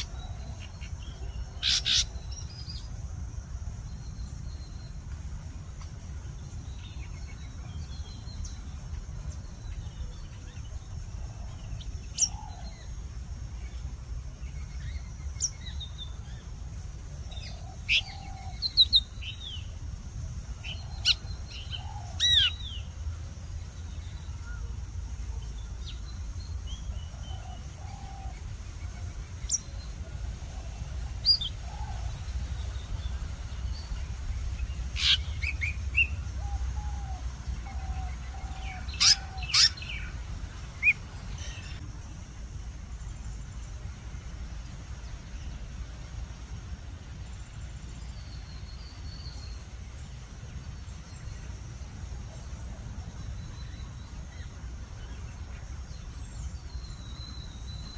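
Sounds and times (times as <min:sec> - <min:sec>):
wild birds chirping and calling: 0:00.0 - 0:03.0, 0:05.6 - 0:41.8.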